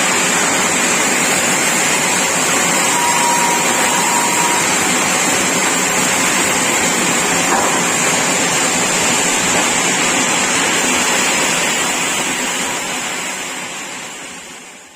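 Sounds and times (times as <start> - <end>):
sawmill machinery whirring: 0.0 - 13.4.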